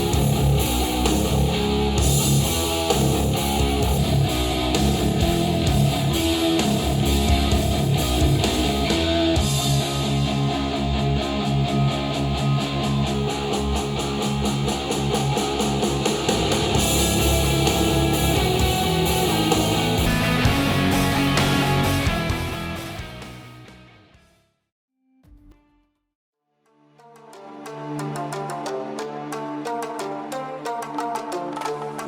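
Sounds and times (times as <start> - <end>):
guitar instrumental music over speakers: 0.0 - 24.3.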